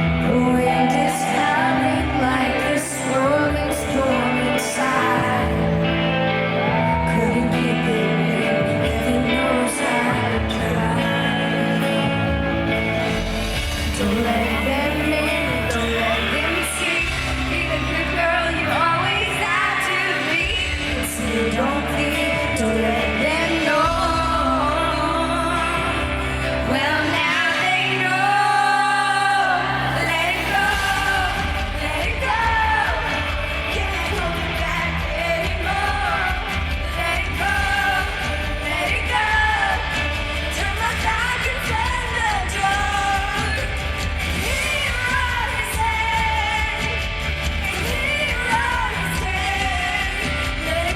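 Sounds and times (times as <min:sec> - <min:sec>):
person singing: 0:00.0 - 0:50.9
pop band accompaniment: 0:00.0 - 0:50.9.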